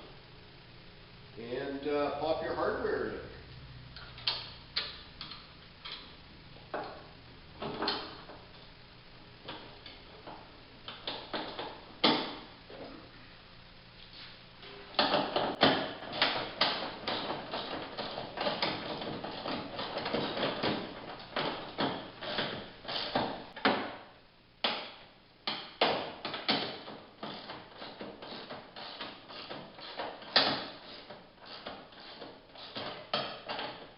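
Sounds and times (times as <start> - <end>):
hand tools clicking and knocking: 15.0 - 24.0, 25.4 - 33.8.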